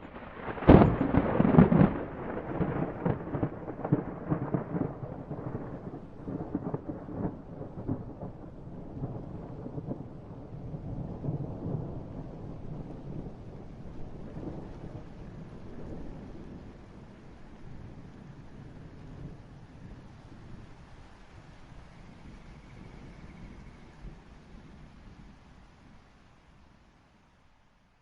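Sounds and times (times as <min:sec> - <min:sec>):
thunder crack and rumble: 0:00.0 - 0:20.8
rain falling: 0:00.0 - 0:28.0.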